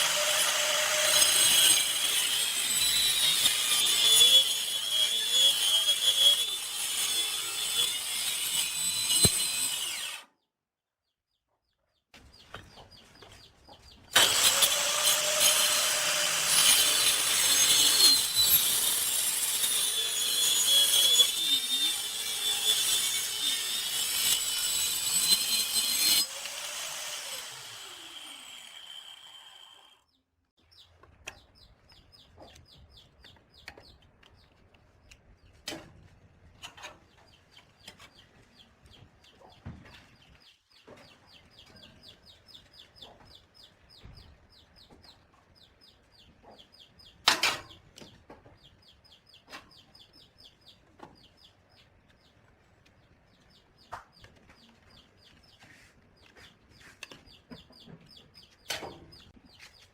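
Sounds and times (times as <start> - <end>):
angle grinder whining on wood: 0.0 - 10.3, 14.2 - 30.0.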